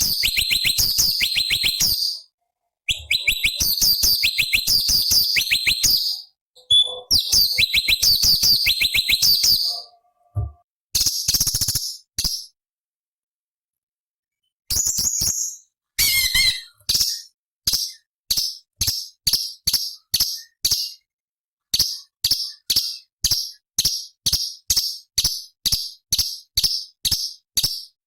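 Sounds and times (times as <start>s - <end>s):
bird chattering and warbling: 2.9s - 10.4s
high bird chip notes: 2.9s - 10.5s.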